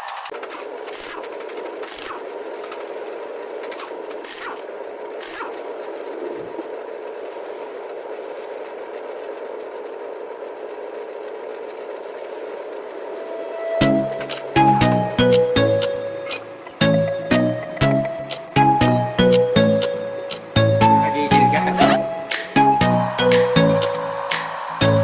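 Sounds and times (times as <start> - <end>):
mechanical running noise: 0.0 - 13.2
sharp clicks: 22.3 - 23.5.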